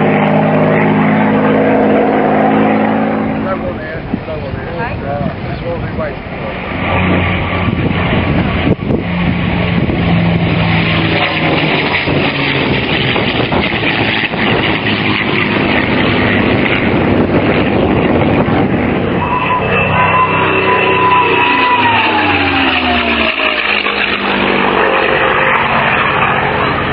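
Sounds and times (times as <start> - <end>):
propeller aircraft engine running: 0.0 - 26.9
high whistling tone dropping in pitch: 19.1 - 26.1.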